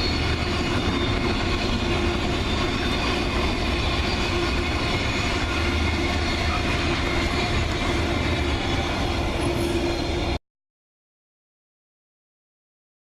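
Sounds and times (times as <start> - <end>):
freight train rolling past: 0.0 - 10.4.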